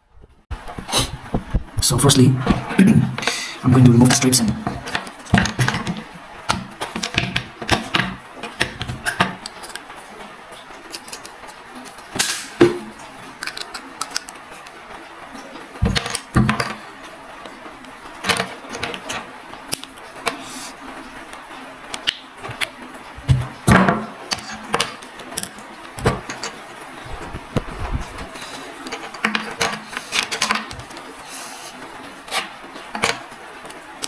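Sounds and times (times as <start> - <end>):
plastic clicking and knocking: 4.0 - 9.9, 10.9 - 14.4, 15.8 - 16.8, 18.2 - 20.5, 22.0 - 31.1, 32.3 - 33.3.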